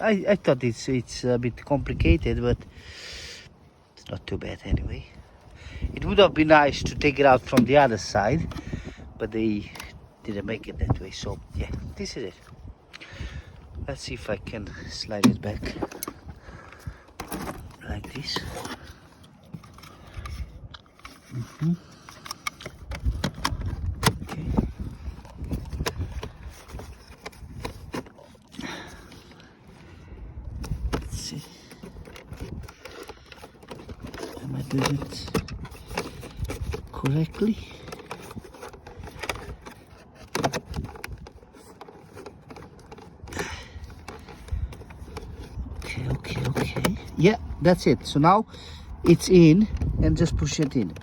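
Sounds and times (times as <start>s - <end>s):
plastic trim panel knocking and scraping: 22.2s - 28.2s, 30.6s - 47.5s.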